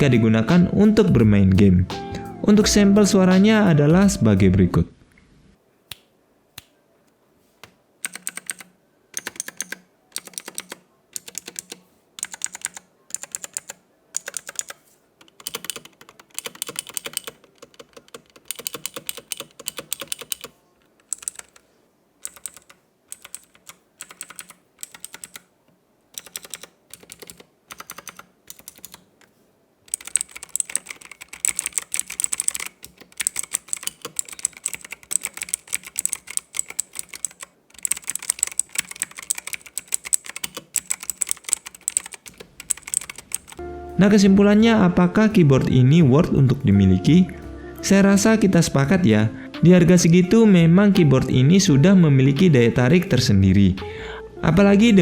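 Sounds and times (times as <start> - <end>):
clicky keyboard typing: 8.0 - 25.5, 26.2 - 29.3, 29.9 - 43.6.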